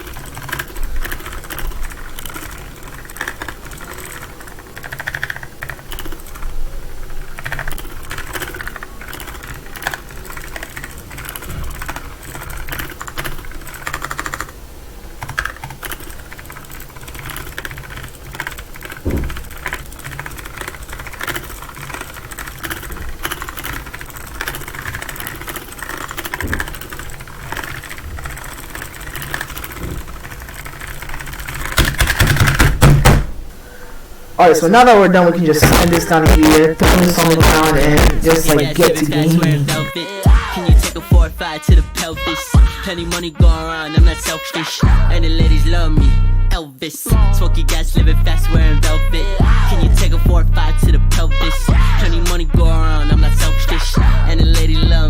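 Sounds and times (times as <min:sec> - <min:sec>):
clicky mechanical keyboard typing: 0:00.0 - 0:14.6, 0:15.2 - 0:33.2, 0:34.4 - 0:40.0.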